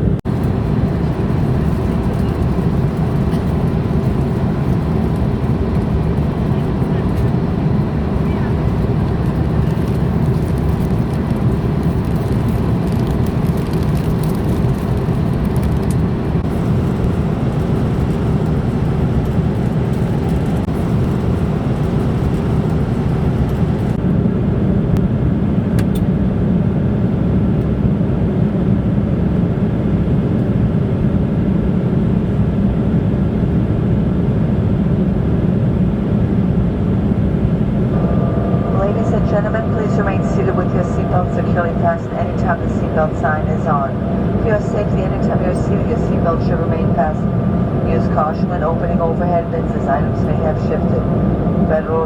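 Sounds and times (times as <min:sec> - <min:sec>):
jet engines roaring: 0:00.0 - 0:26.0, 0:33.4 - 0:52.0
rushing air: 0:37.4 - 0:50.2, 0:50.8 - 0:51.9.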